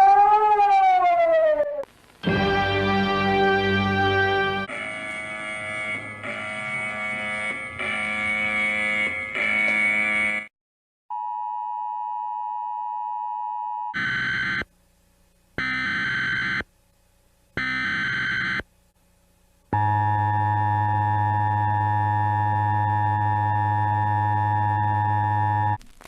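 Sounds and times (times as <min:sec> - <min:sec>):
loud electronic sound: 0:02.3 - 0:10.5
harsh steady alert tone: 0:04.6 - 0:10.5.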